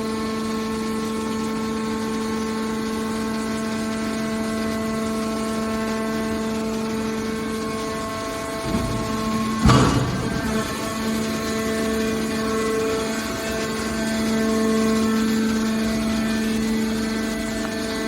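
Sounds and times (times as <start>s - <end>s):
hydraulic power unit whining: 4.3s - 18.0s.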